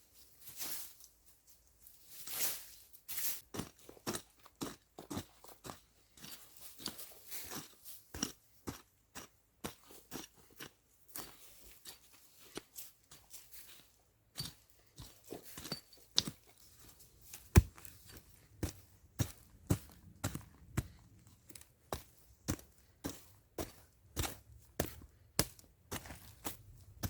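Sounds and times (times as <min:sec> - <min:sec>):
heavy thud: 0:17.5 - 0:17.9.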